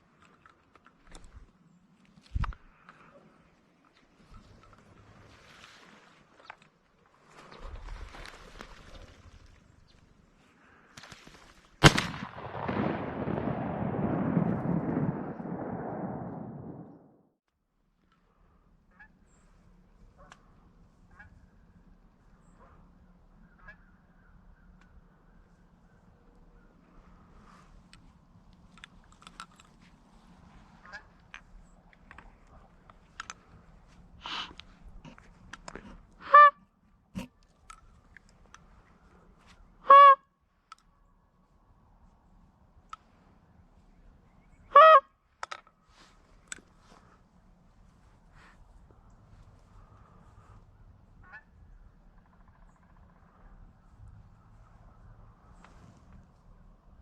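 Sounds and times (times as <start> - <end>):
rustle: 0.0 - 15.7, 18.1 - 39.9, 40.6 - 57.0
shotgun blast: 11.8 - 17.1
goose honk: 18.9 - 19.2, 21.1 - 21.5, 23.4 - 24.0, 30.8 - 31.2, 36.2 - 37.3, 39.8 - 40.2, 44.7 - 45.1, 51.2 - 51.6.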